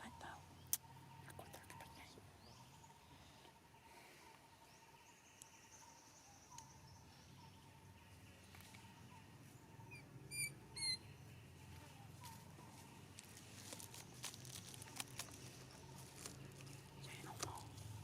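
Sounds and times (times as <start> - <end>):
baby monkey squeaking: 9.9 - 11.0.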